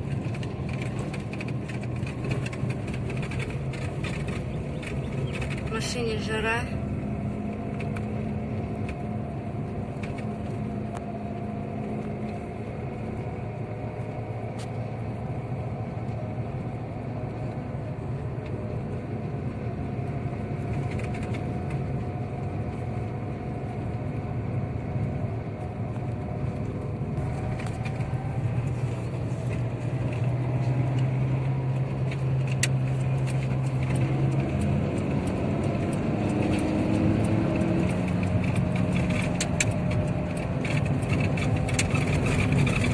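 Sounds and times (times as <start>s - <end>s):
car engine hum: 0.0s - 42.9s
tyre and road noise: 0.0s - 42.9s.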